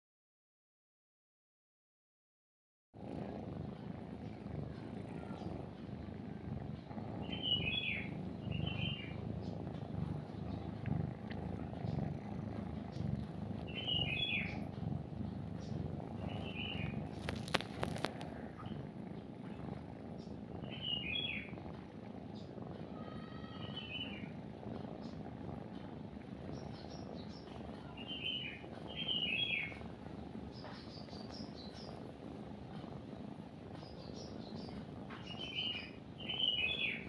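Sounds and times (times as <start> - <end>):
kitten purring: 3.0 - 37.0
bird chirps: 7.2 - 9.6, 13.6 - 14.6, 15.6 - 17.6, 20.6 - 21.5, 23.3 - 24.3, 26.5 - 29.8, 33.8 - 37.0.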